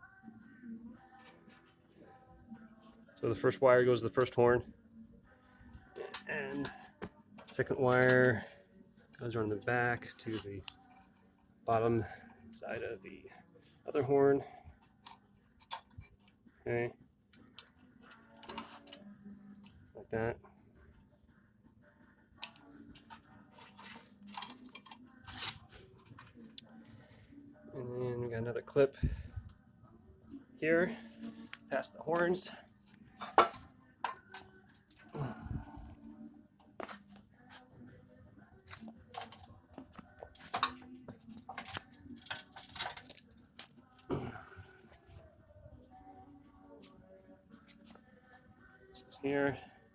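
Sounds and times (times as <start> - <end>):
small clicks and scrapes: 13.3 - 16.6, 17.3 - 19.8, 22.4 - 27.2, 32.8 - 35.1, 38.6 - 48.3
wires rustling: 17.3 - 20.0, 22.4 - 27.3, 38.6 - 49.2
wiring clips clicking and rattling: 38.7 - 44.2.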